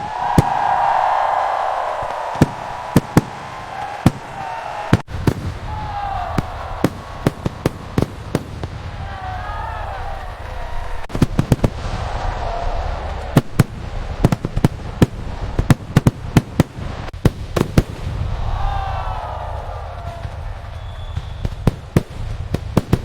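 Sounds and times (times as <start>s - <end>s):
fireworks cracking: 0.0s - 23.0s
rumble of distant fireworks: 0.0s - 23.0s
faint voices of onlookers: 5.6s - 11.1s.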